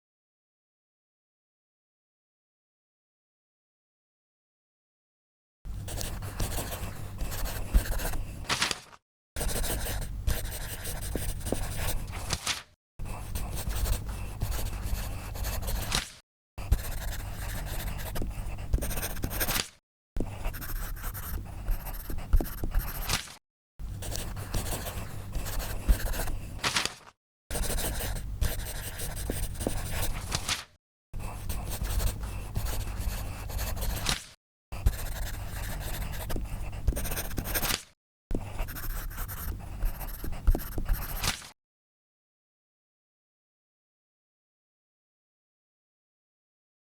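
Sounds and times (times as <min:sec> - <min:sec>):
pen scribbling on paper: 0:05.9 - 0:08.6, 0:09.4 - 0:12.4, 0:13.0 - 0:23.4, 0:24.0 - 0:26.8, 0:27.5 - 0:30.5, 0:31.2 - 0:34.2, 0:34.8 - 0:41.5.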